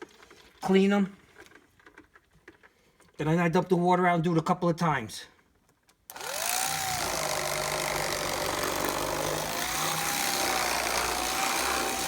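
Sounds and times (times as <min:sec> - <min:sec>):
electric knife motor whine: 0:06.1 - 0:12.0.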